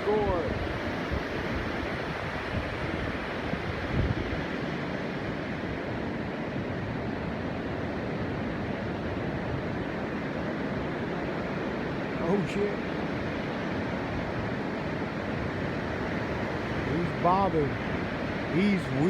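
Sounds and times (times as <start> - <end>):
wind buffeting microphone: 0.0 - 12.2.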